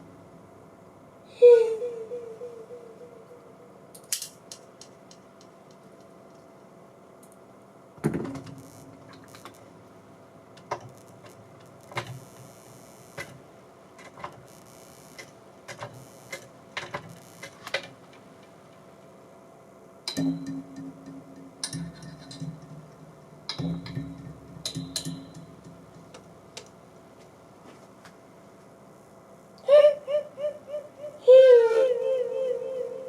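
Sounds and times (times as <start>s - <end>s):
faint steady hum: 0.0s - 33.0s
low tone: 1.3s - 3.9s.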